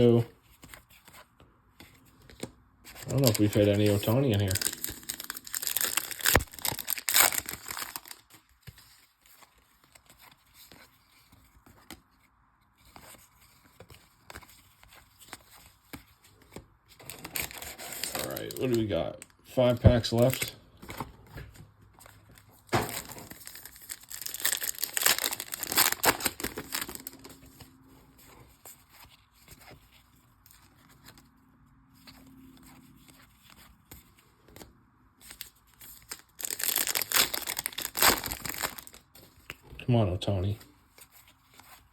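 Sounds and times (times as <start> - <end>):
trading cards handled: 0.4 - 31.3, 32.0 - 39.6
foil wrapper tearing open: 3.0 - 8.3, 17.1 - 18.9, 22.8 - 27.4, 36.0 - 39.1
cards being flipped: 19.9 - 27.7.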